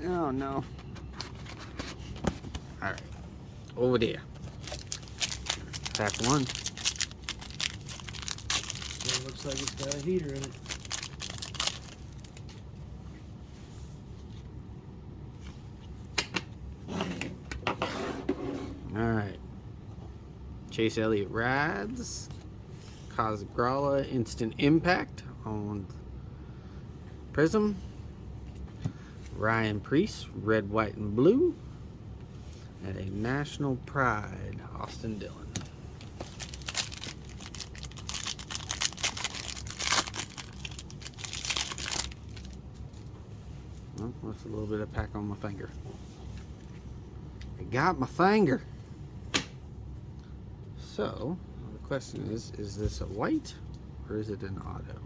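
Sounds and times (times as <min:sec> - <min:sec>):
low steady background noise: 0:00.0 - 0:55.0
trading cards being handled: 0:04.3 - 0:12.6
foil wrapper crinkling and tearing: 0:04.5 - 0:12.6, 0:36.2 - 0:42.6.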